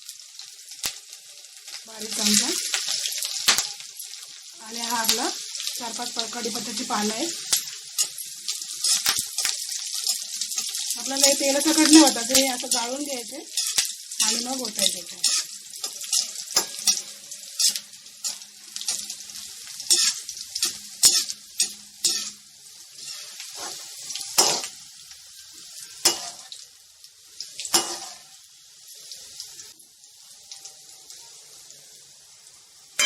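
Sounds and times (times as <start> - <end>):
chillies sizzling in hot oil: 0.0 - 33.0
metal spoon scraping pan: 19.8 - 22.4, 23.0 - 24.7.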